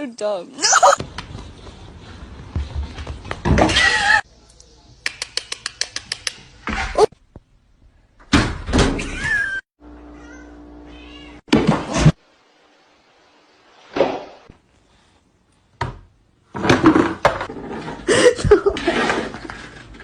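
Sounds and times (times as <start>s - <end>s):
quick clicks: 4.5s - 6.4s
cat meowing: 10.2s - 11.4s.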